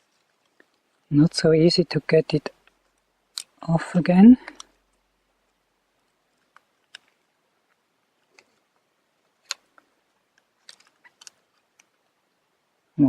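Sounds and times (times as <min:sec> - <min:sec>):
plastic phone parts clicking: 0:09.3 - 0:12.0.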